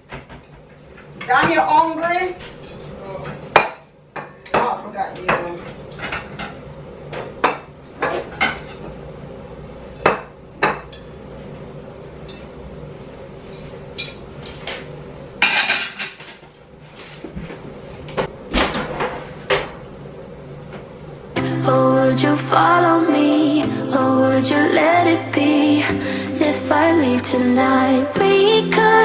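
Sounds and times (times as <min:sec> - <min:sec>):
dishes and cutlery clinking: 0:07.2 - 0:08.9.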